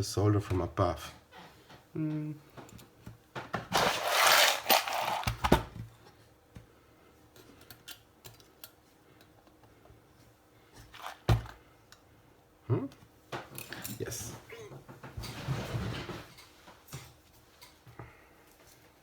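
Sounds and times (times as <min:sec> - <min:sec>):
scraping and rustling: 0:03.7 - 0:05.2, 0:15.1 - 0:16.6.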